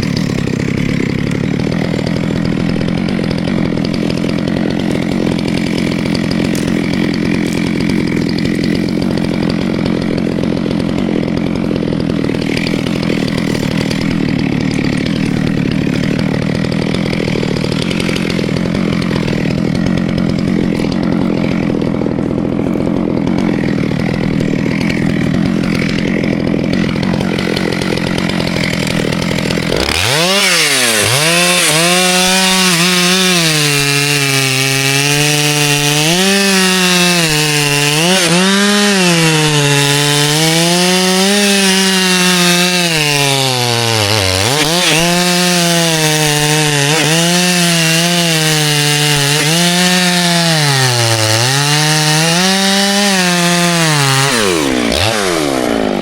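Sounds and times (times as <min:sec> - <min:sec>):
steady engine noise: 0:00.0 - 0:36.0
chainsaw cutting wood: 0:00.0 - 0:56.0.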